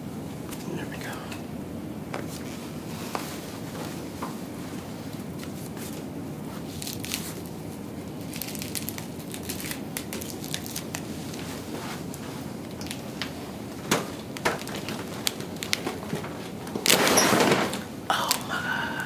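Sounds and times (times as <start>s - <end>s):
steady low hum: 0.0s - 19.0s
rustling and crinkling: 2.1s - 18.4s
small crackling clicks: 6.8s - 18.5s.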